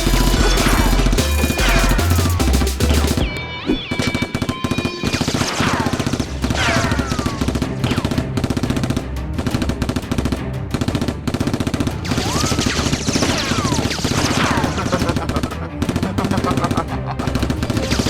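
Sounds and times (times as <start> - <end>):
rapid automatic gunfire: 0.0 - 3.3, 3.9 - 16.3
background music: 0.0 - 18.0
whizzing bullets: 3.9 - 15.2.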